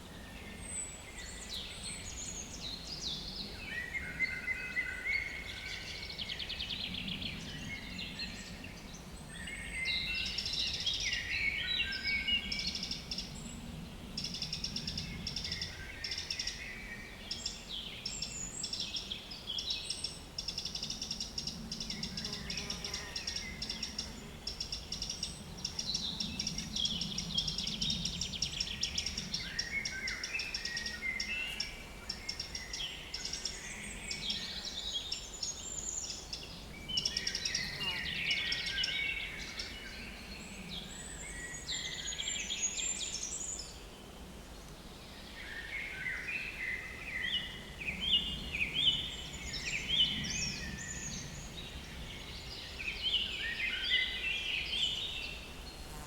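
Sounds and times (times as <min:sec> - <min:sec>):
songbirds singing: 0:00.0 - 0:56.0
fly buzzing: 0:55.6 - 0:56.0.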